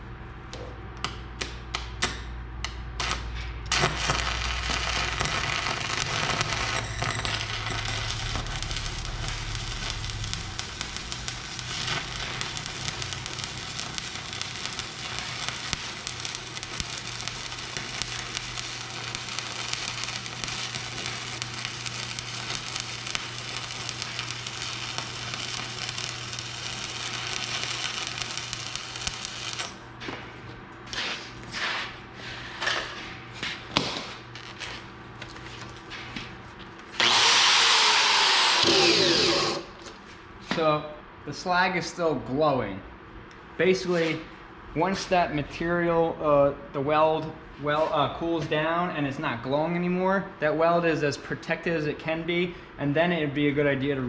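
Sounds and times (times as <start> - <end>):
low steady hum: 0.0 - 30.8
welding arc crackling: 2.9 - 29.9, 33.8 - 35.3, 36.9 - 39.8
electrode striking clicks: 4.8 - 29.8.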